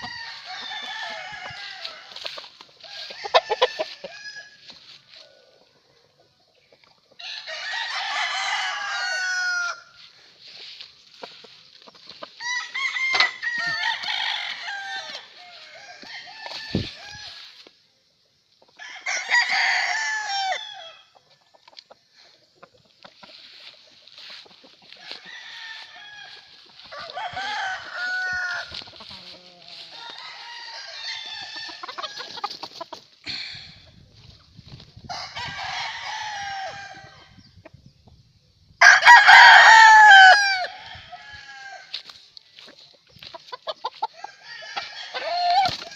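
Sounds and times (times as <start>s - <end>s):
roosters crowing: 0.0s - 5.6s, 7.2s - 17.7s, 18.8s - 21.2s, 23.4s - 33.7s, 35.0s - 37.4s, 38.8s - 45.9s
chickens clucking: 0.0s - 7.2s, 9.4s - 18.8s, 21.1s - 25.3s, 26.5s - 35.2s, 42.0s - 45.9s.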